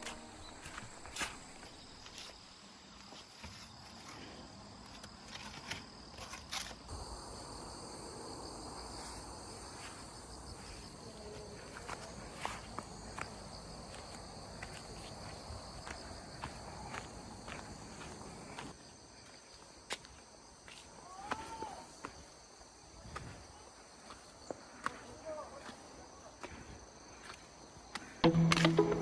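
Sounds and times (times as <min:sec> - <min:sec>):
footsteps on outdoor path: 0:00.0 - 0:07.2, 0:08.9 - 0:22.4
insects chirping: 0:00.0 - 0:29.0.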